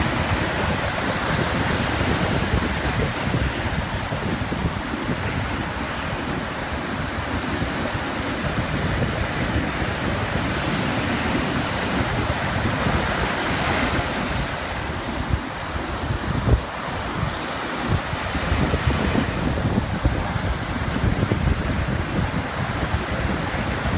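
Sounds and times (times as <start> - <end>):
small waves lapping on beach: 0.0 - 23.9
wind buffeting microphone: 0.0 - 23.9.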